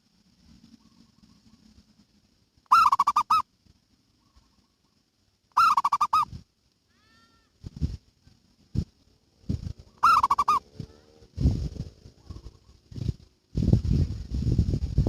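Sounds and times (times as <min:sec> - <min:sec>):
dove cooing: 0:02.7 - 0:03.4, 0:05.6 - 0:06.3, 0:09.9 - 0:11.2.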